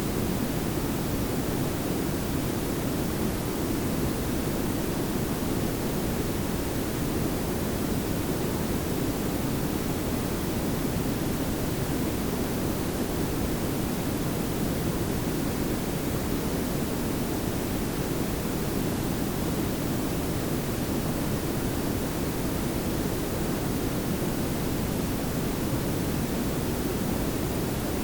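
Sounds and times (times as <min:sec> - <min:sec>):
steady noise hiss: 0:00.0 - 0:28.0.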